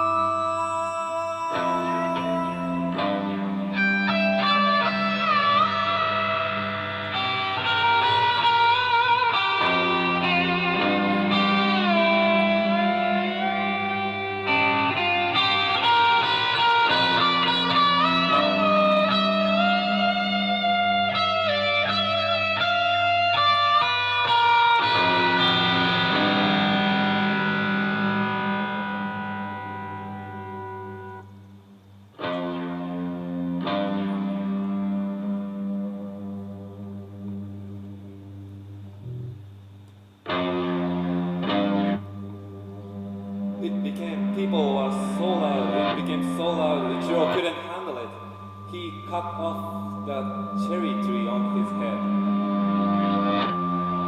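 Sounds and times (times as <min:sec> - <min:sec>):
guitar through effects: 0:00.0 - 0:54.0
steady low drone: 0:40.8 - 0:54.0.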